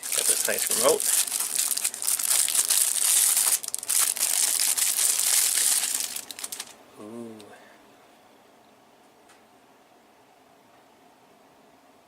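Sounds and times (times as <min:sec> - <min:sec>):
plastic wrapping crinkling: 0:00.0 - 0:06.8.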